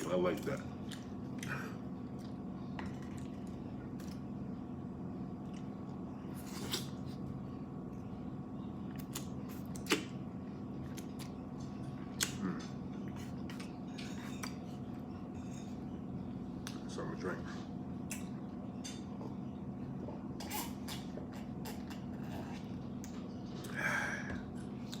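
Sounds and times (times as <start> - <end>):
steady background hum: 0.0 - 25.0.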